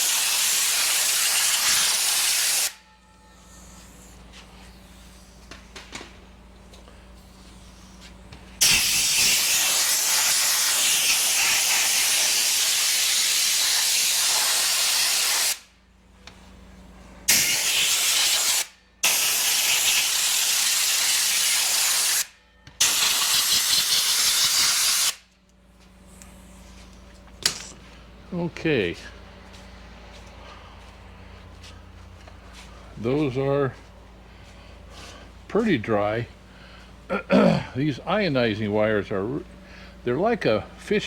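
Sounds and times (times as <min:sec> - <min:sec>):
compressed air blow gun hissing: 0:00.0 - 0:02.7, 0:08.6 - 0:15.6, 0:17.3 - 0:25.2.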